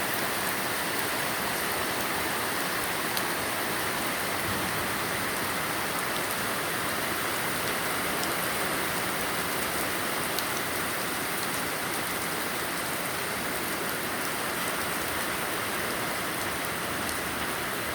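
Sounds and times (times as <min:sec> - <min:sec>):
heavy rain: 0:00.0 - 0:17.9.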